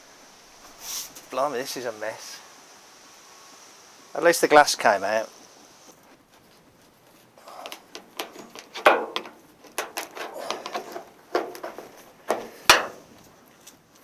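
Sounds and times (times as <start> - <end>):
knocks clicks and scraping: 7.6 - 13.8.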